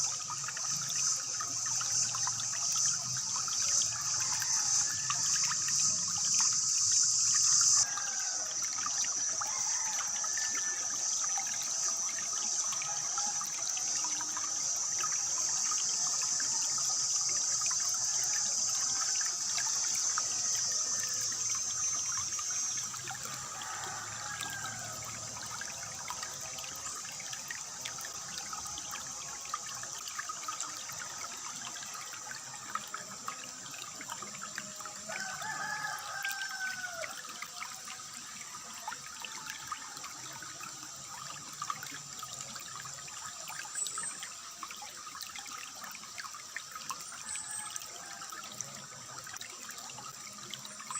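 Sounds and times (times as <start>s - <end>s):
high steady hiss: 0.0s - 9.7s
water trickling: 0.0s - 50.9s.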